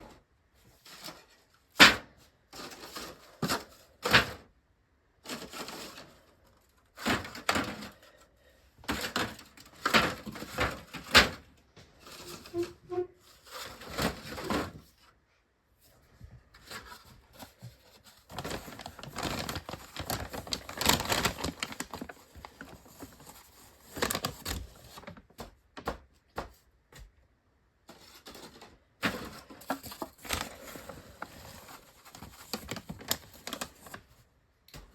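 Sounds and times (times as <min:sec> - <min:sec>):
rustling: 0:15.8 - 0:25.2.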